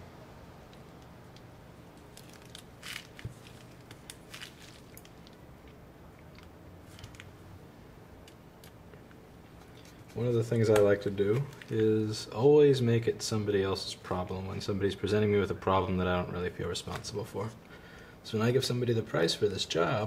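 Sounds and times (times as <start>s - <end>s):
small clicks and crackles: 0.7s - 7.3s
small tools and parts handled: 2.0s - 5.4s, 9.5s - 10.3s.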